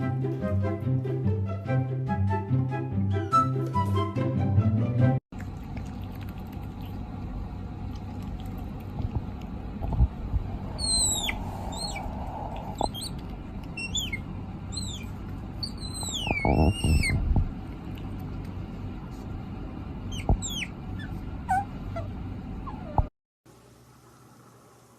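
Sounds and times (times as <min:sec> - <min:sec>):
small animal squeaking: 0:10.7 - 0:17.3, 0:20.1 - 0:23.1.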